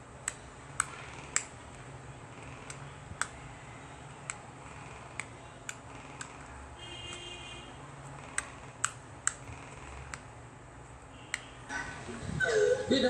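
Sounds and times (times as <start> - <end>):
sharp clicks: 0.2 - 1.6, 5.0 - 6.5, 8.2 - 10.3.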